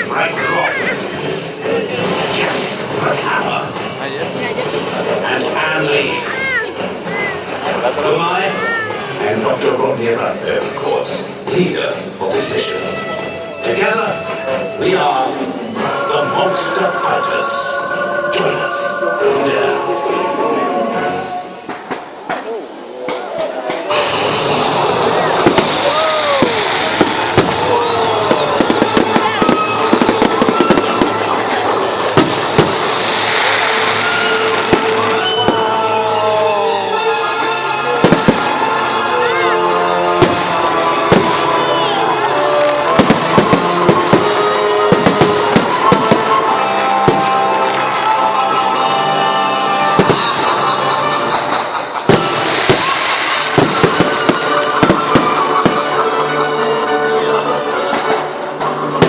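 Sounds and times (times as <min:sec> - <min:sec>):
fireworks crackling and popping: 0:00.0 - 0:09.8, 0:21.4 - 0:59.0
music: 0:00.0 - 0:59.0
fireworks bangs: 0:00.4 - 0:04.0, 0:21.0 - 0:57.1.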